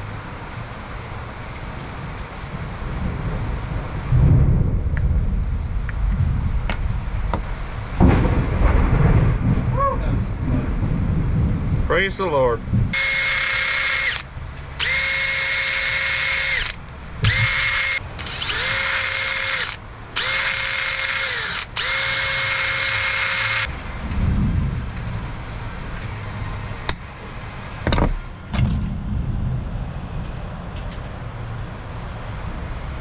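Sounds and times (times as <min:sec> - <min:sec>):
power tool whining: 0:13.0 - 0:23.7
sharp clicks: 0:13.0 - 0:23.7.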